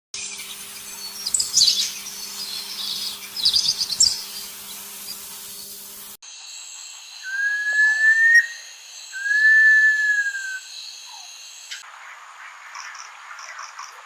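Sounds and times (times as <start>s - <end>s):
songbirds chirping: 0.2s - 5.8s
steady high hiss: 0.2s - 13.8s.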